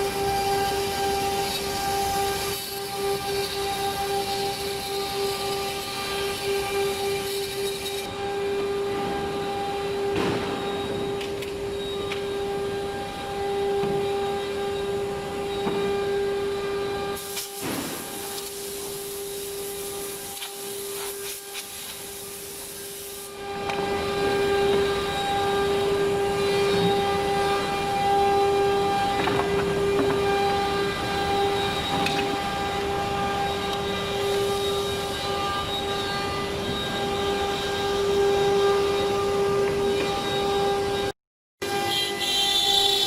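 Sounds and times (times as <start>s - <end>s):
router spindle whining: 23.3s - 43.0s.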